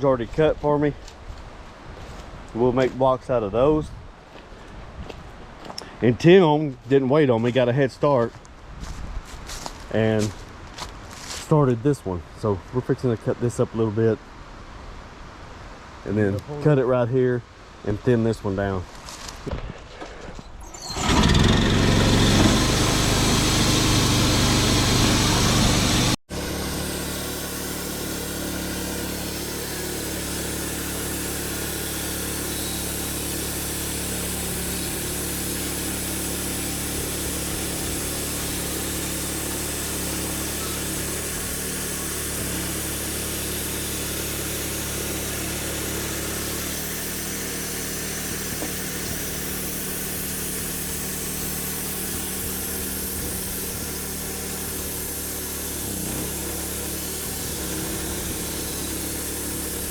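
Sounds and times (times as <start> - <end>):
sawmill engine cutting wood: 20.6 - 59.9.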